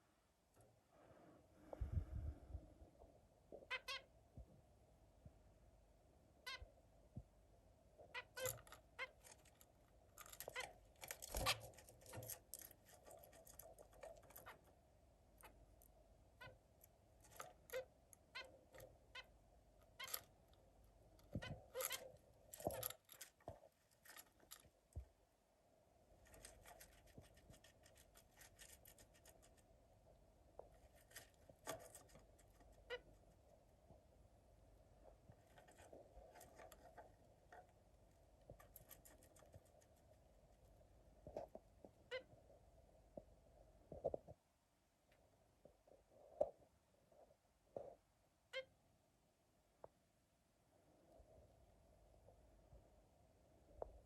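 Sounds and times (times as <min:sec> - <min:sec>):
zebra finch calling: 0:03.7 - 0:04.1.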